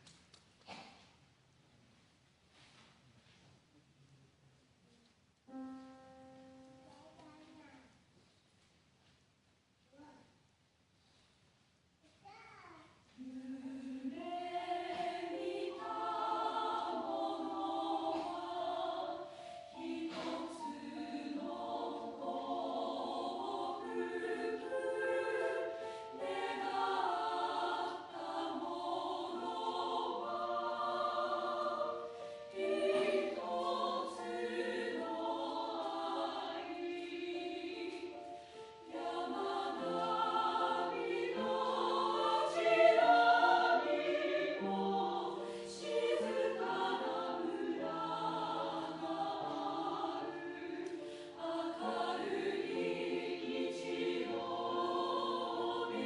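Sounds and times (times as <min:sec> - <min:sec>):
choir singing in harmony: 0:13.2 - 0:56.0.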